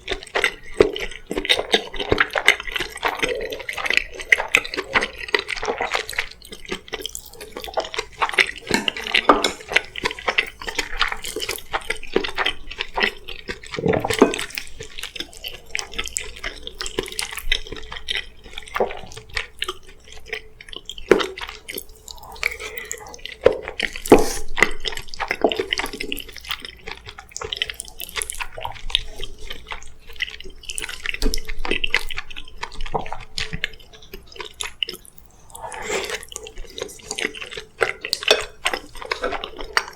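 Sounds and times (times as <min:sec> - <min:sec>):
wet chewing and mouth sounds: 0:00.0 - 0:39.9.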